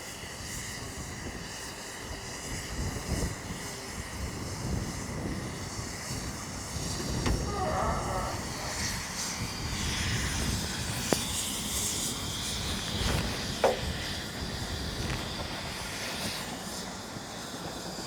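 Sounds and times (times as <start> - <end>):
locomotive engine drone: 6.2 - 9.3.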